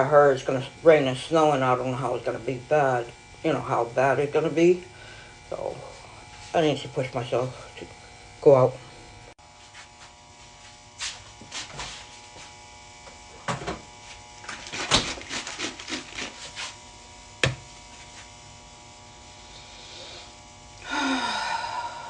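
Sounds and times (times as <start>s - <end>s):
steady electrical hum: 0.0s - 22.0s
rustling noise: 9.6s - 12.6s, 14.0s - 16.8s.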